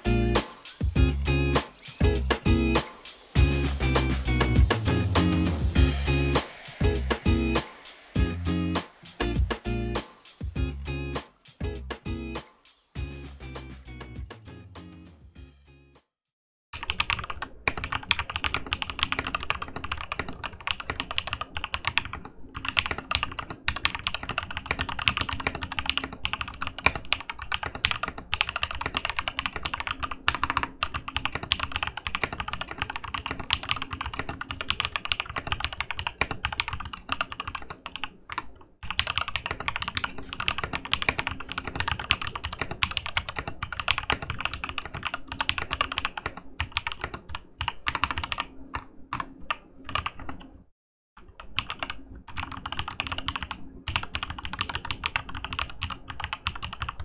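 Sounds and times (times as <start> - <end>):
typing on mechanical keyboard: 16.8 - 50.5, 51.2 - 57.0.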